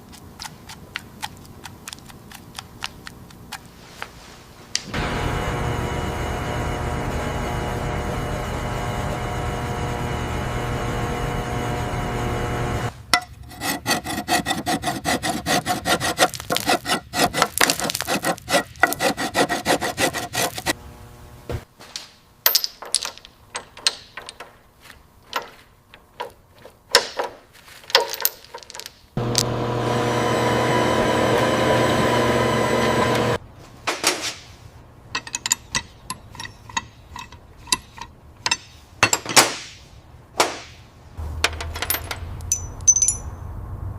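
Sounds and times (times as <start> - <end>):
machine running: 4.9 - 12.9, 29.2 - 33.4
rasping sanding strokes: 13.4 - 20.8
scrapes and clicks: 15.5 - 20.8.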